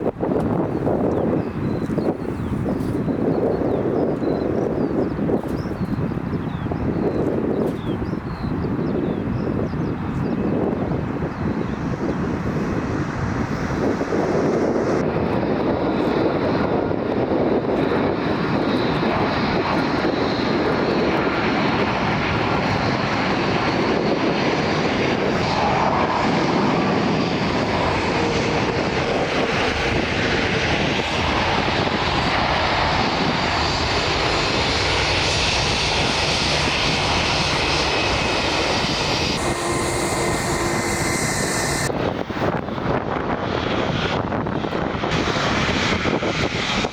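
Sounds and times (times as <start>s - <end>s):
jet engines roaring on landing: 0.0s - 46.9s
high jet whine: 10.6s - 42.6s.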